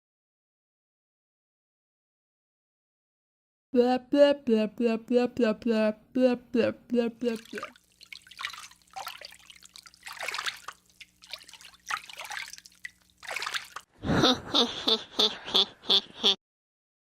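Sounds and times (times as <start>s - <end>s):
water splashing and trickling: 7.2s - 13.9s.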